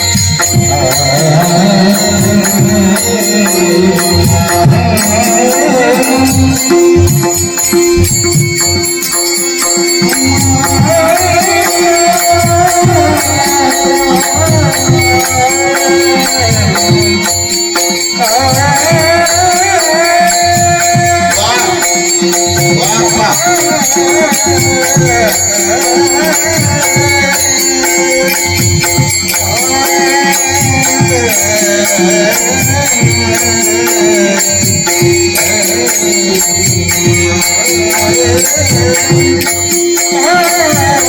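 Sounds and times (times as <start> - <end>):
drum beat: 0.0 - 41.0
person singing: 0.0 - 41.0
small hand cymbals: 0.0 - 41.0.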